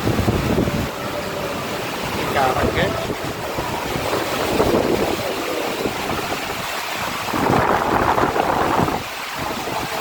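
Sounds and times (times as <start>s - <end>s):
strong gusting wind: 0.0s - 10.0s.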